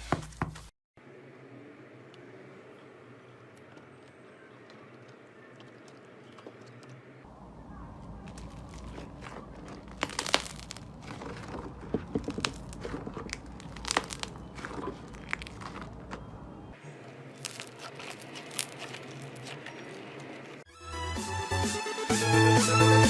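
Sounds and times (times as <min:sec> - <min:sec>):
slime crackling and popping: 0:08.3 - 0:16.2, 0:17.3 - 0:19.9.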